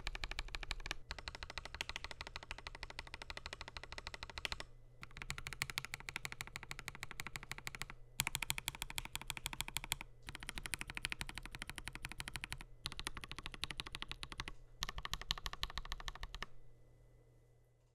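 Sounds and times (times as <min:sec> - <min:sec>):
fast typing on mechanical keyboard: 0:00.0 - 0:16.5.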